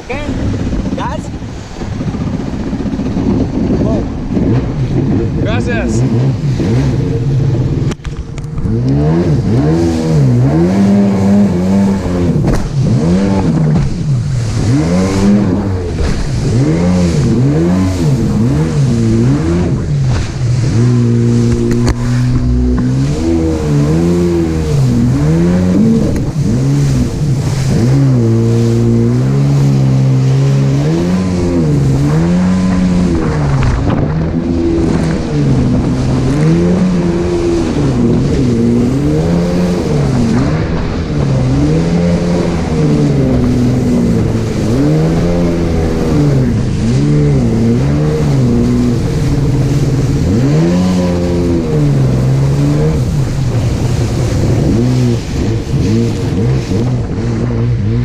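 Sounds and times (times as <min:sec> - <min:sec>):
jet ski engine running: 0:00.0 - 0:58.0
wind and water rushing: 0:00.0 - 0:58.0.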